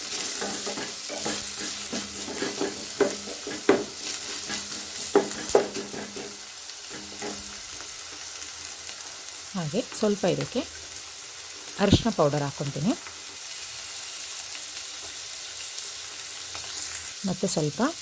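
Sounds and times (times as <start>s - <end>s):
spoon scraping and knocking pan: 0.0s - 7.6s, 11.8s - 12.2s
vegetables sizzling in oil: 0.0s - 18.0s.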